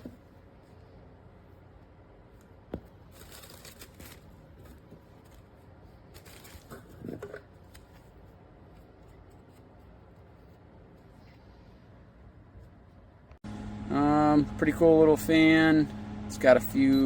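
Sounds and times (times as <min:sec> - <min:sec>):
rustling and handling noises: 0:00.0 - 0:13.3.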